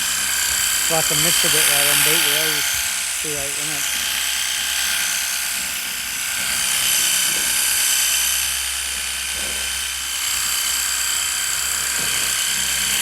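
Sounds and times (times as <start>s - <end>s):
electric pump whining: 0.0s - 13.0s
water jet hissing: 0.7s - 4.1s.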